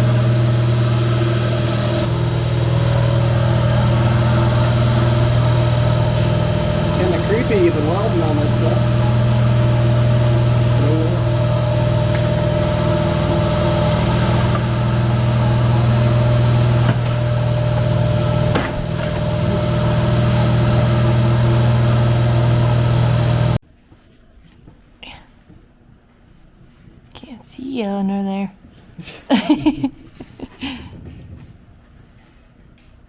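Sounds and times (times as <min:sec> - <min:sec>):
low machine hum: 0:00.0 - 0:23.6.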